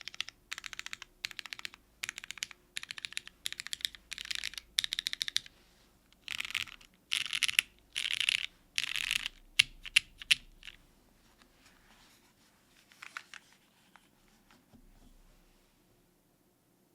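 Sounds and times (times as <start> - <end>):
mechanical keyboard typing: 0.0 - 5.5, 6.2 - 10.8.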